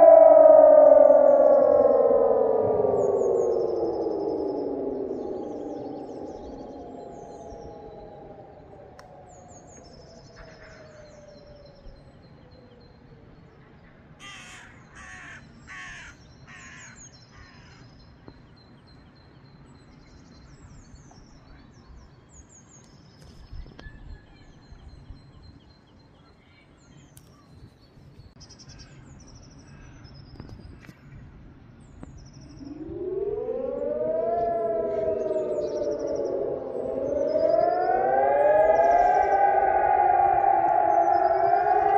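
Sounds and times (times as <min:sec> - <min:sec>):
civil defence sirens: 0:00.0 - 0:16.8, 0:32.5 - 0:41.9
crow cawing: 0:14.2 - 0:17.8.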